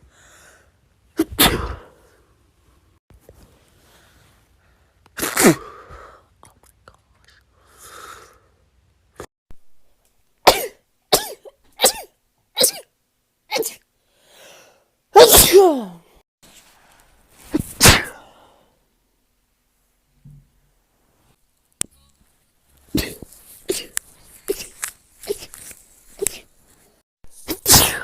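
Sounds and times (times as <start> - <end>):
woman sneezing: 1.2 - 1.9, 15.2 - 16.0, 17.6 - 18.2, 27.4 - 28.0.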